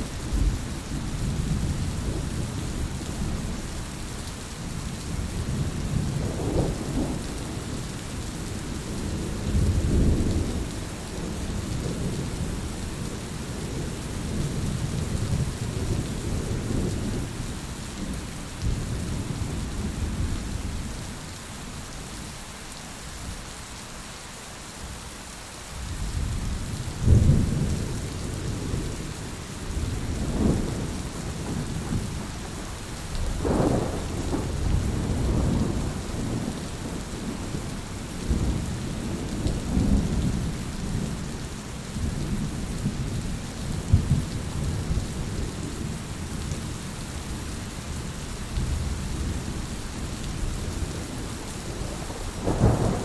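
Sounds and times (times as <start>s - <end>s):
rain falling: 0.0s - 53.0s
thunder rumbling: 26.1s - 41.3s, 41.9s - 46.3s, 48.6s - 53.0s.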